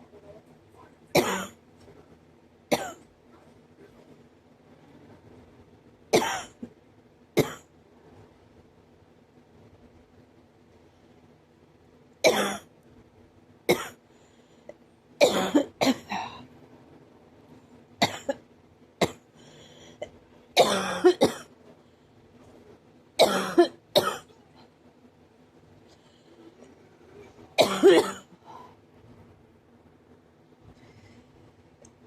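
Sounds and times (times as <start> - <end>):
person coughing hard: 1.2 - 1.6, 2.7 - 3.0, 6.2 - 6.7, 12.2 - 12.7, 13.7 - 14.0, 15.2 - 16.4, 18.0 - 18.4, 20.6 - 21.5, 23.2 - 24.4, 27.6 - 28.3.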